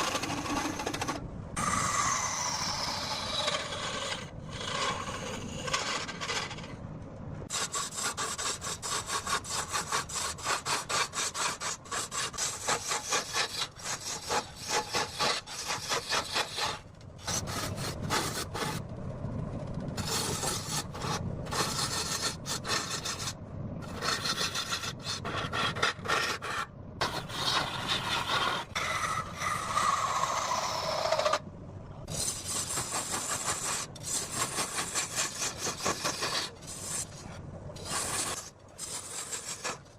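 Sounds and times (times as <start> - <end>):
lathe tool scraping wood: 0.0 - 6.7, 23.9 - 31.4, 32.1 - 39.9.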